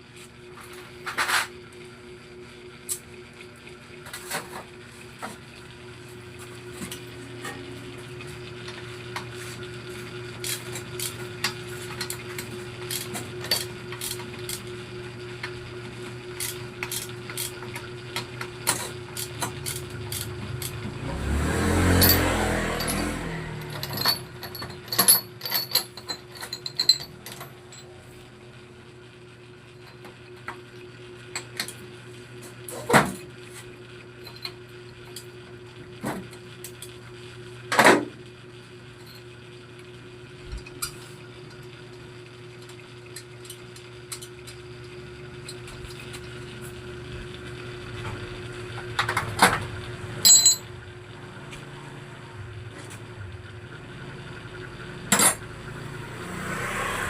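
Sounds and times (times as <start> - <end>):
metal tools clinking: 21.9 - 27.9, 50.2 - 50.7.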